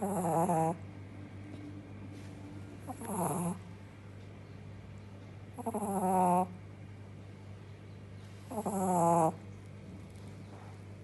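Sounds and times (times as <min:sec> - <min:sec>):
puppy snoring: 0:00.0 - 0:00.9, 0:02.8 - 0:03.7, 0:05.5 - 0:06.6, 0:08.5 - 0:09.5
steady low hum: 0:00.0 - 0:11.0.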